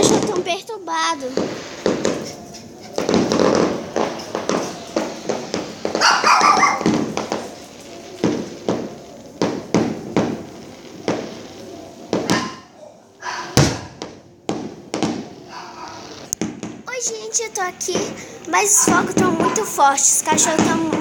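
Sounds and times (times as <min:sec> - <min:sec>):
fireworks bangs: 0:00.0 - 0:21.0
dogs barking: 0:05.9 - 0:07.6, 0:12.2 - 0:14.0.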